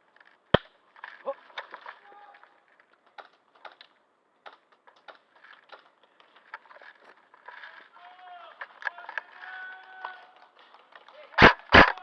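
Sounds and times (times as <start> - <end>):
sharp clicks and snaps: 2.8 - 7.0.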